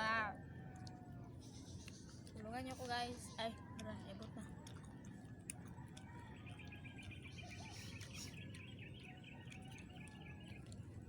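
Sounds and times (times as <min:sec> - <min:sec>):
outdoor background noise: 0:00.0 - 0:11.0
bird chirping: 0:06.2 - 0:10.8.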